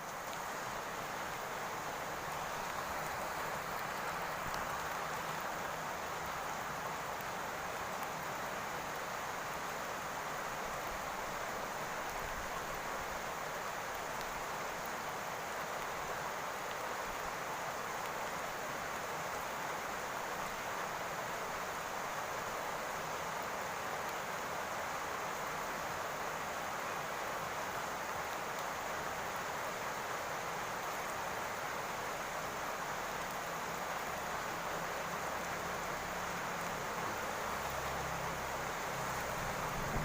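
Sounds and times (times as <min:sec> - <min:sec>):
rain on a roof: 0:00.0 - 0:40.0.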